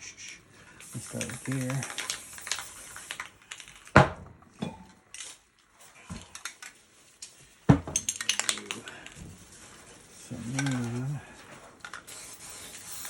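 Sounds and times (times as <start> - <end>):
spray cans clinking and knocking: 0.8 - 5.4, 6.0 - 9.7, 10.3 - 11.2
small clicks: 8.0 - 9.2.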